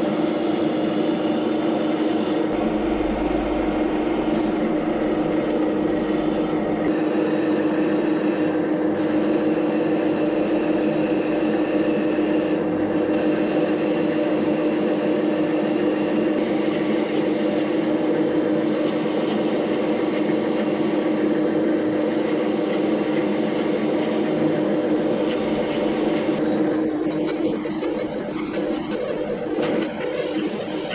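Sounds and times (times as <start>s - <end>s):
metal lathe motor hum: 2.5s - 15.2s, 20.8s - 30.9s.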